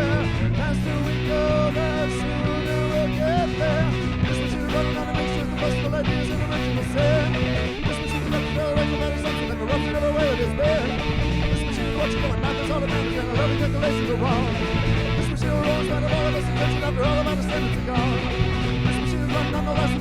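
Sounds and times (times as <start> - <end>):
punk rock band playing: 0.0 - 20.0.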